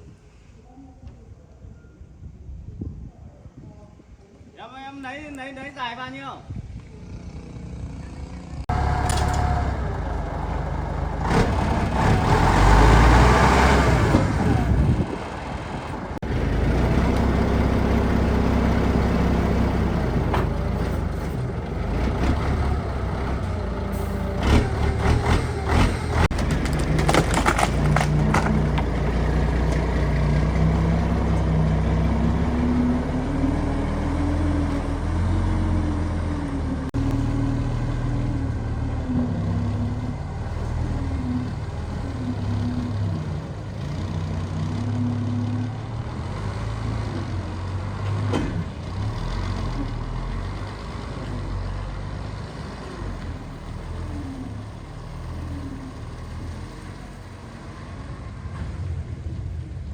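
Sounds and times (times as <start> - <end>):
heavy diesel engine revving: 7.4 - 27.1, 27.8 - 58.5
clatter of knocks: 25.7 - 29.0.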